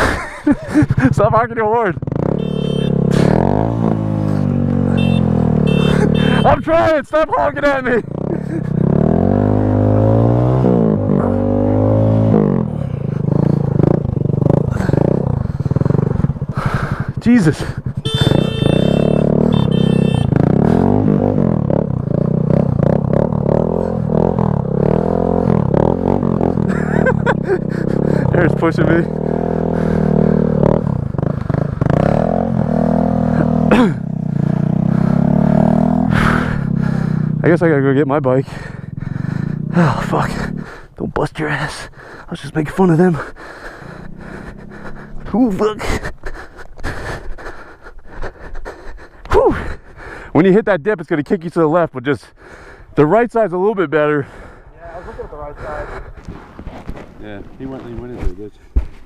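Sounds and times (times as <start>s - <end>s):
motorcycle engine revving: 0.0s - 47.5s
mini-bike engine idling: 12.8s - 20.9s, 42.9s - 45.5s.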